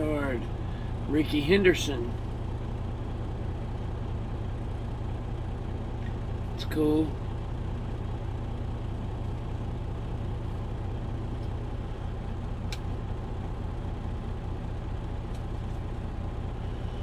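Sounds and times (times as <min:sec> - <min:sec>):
truck engine idling: 0:00.0 - 0:17.0.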